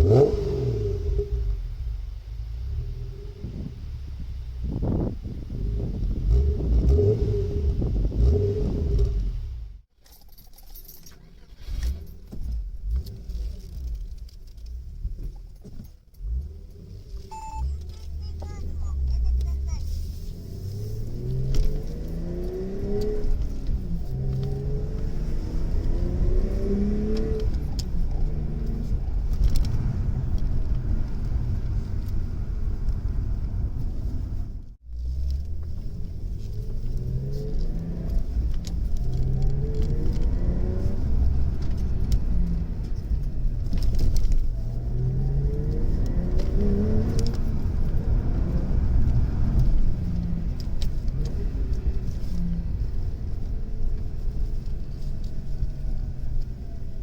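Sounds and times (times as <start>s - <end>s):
car engine accelerating: 0.0s - 9.9s, 11.2s - 57.0s.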